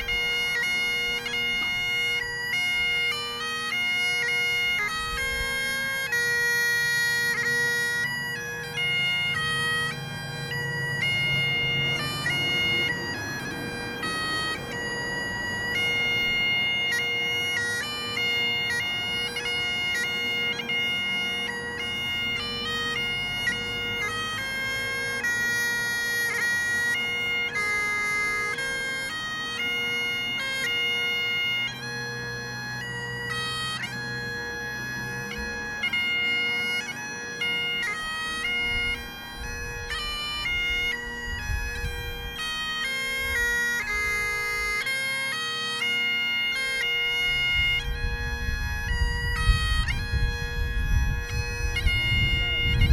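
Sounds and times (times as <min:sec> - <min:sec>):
bagpipes playing a melody: 0:00.0 - 0:52.9.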